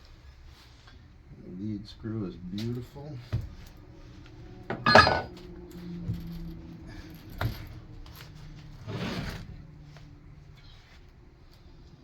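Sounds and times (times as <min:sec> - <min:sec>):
scraping rustle: 0:05.8 - 0:11.2.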